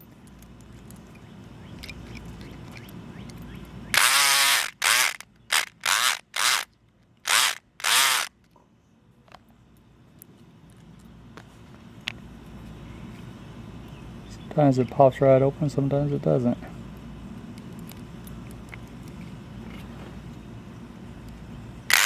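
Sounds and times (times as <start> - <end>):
electric lock pick buzzing: 0.3 - 8.3.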